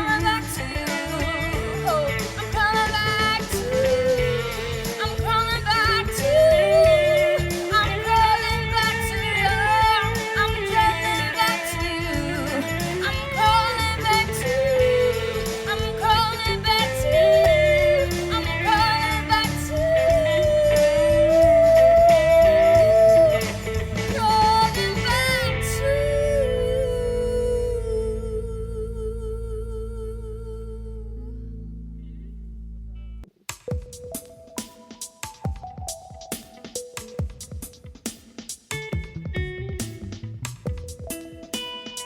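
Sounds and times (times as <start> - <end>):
guitar accompaniment: 0.0 - 28.1, 38.7 - 42.0
woman singing slow melody: 0.0 - 31.8.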